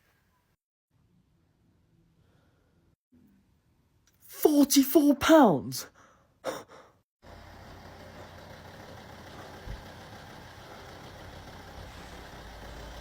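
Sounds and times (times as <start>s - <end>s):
engine rumble with hiss: 7.2s - 13.0s.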